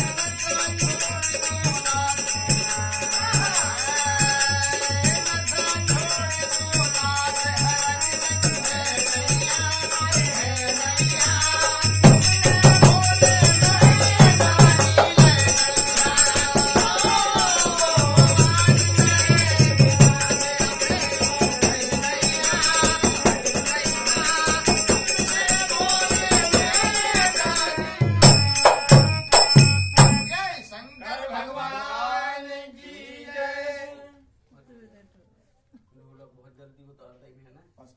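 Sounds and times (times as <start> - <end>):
steady drum beat: 0.0 - 30.3
jingling percussion: 0.0 - 31.4.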